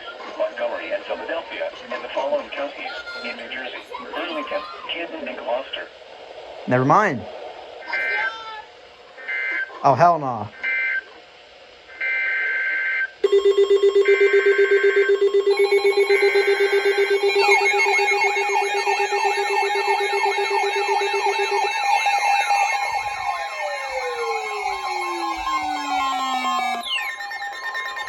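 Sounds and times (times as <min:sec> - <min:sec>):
rapidly pulsing buzz: 0:13.2 - 0:27.9
steady alert tones: 0:13.2 - 0:28.0
tone gliding down in pitch: 0:13.2 - 0:28.0
warbling siren-like sweep: 0:13.2 - 0:28.0.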